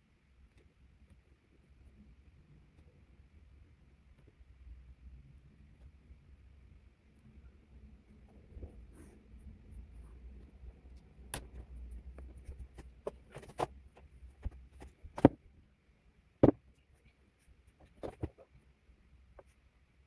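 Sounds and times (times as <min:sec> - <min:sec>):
faint low hum: 0:00.0 - 0:20.0
pen and paper handling: 0:11.3 - 0:15.4, 0:17.8 - 0:18.4
taps and knocks: 0:16.4 - 0:16.6.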